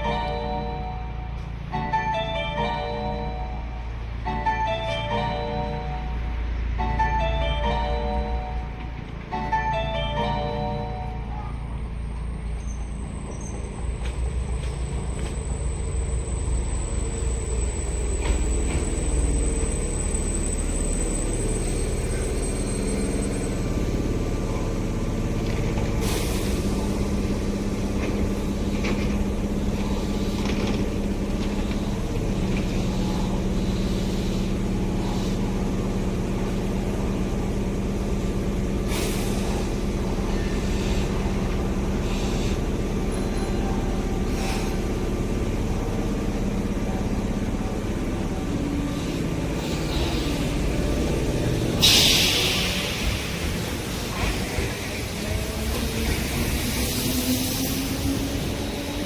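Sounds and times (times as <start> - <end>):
train electric hum: 0.0 - 59.0
air brake hisses: 26.0 - 27.1, 38.9 - 42.8, 44.3 - 44.9, 49.6 - 54.8.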